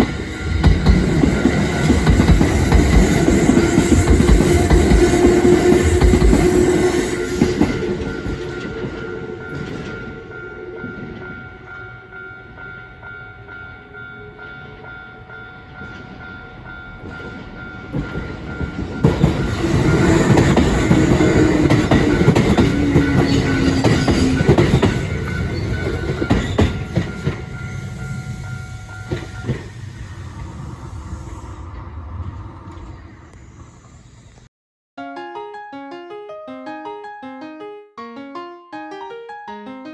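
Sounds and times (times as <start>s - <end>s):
train motor whine: 0.0s - 11.1s, 19.1s - 34.5s
train wheel clatter: 0.0s - 11.4s, 16.9s - 33.0s
electric train passing: 0.0s - 34.5s
level crossing warning signal: 17.2s - 31.1s.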